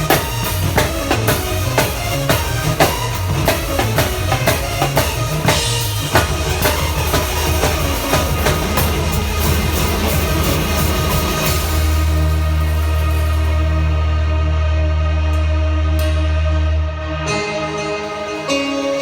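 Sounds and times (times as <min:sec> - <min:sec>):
drum kit beat: 0:00.0 - 0:14.4
cymbal wash: 0:00.0 - 0:17.0
bass line: 0:00.0 - 0:17.8
keyboard playing: 0:00.0 - 0:19.0.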